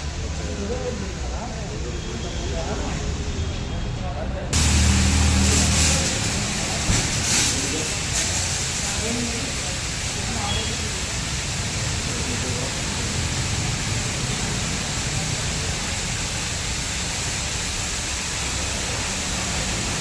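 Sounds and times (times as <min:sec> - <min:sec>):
water spray hissing: 0:04.6 - 0:20.0.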